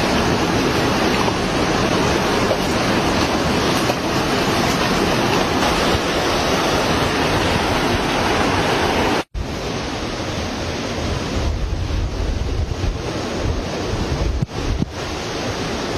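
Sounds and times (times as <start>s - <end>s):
moving water: 0.0s - 15.9s
wind buffeting microphone: 0.0s - 15.9s.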